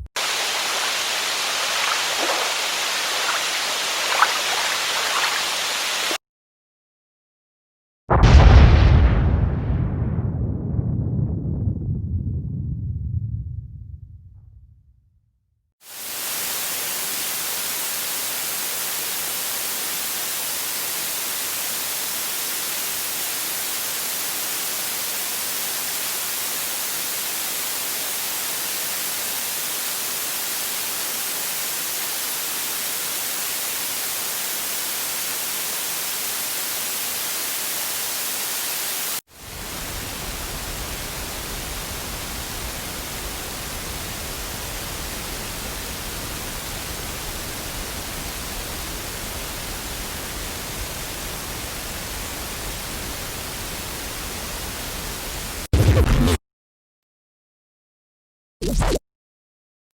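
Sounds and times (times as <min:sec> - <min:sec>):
steady static hiss: 0:00.0 - 0:06.2, 0:15.9 - 0:55.7
dull rushing noise with rumble: 0:09.7 - 0:15.0.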